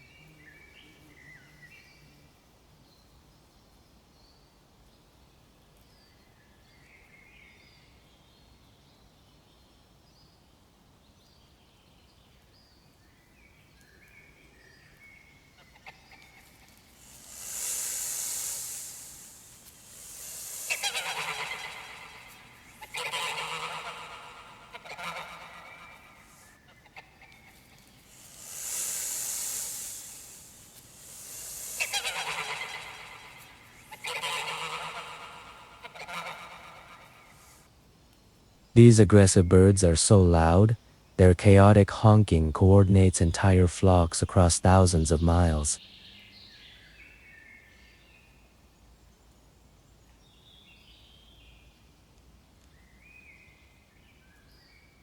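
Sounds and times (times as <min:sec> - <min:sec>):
geese honking: 0:15.7 - 0:37.6
rushing hiss-like noise: 0:16.2 - 0:26.5, 0:27.4 - 0:37.6.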